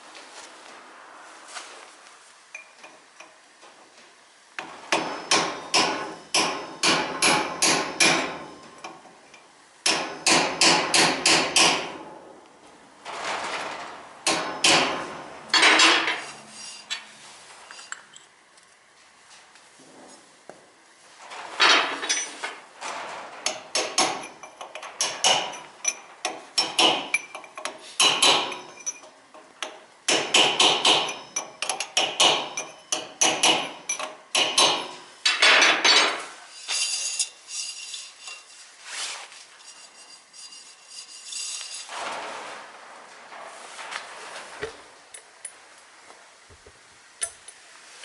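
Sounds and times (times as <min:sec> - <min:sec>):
hand tools clanking on metal: 0:21.6 - 0:22.6, 0:23.4 - 0:38.5.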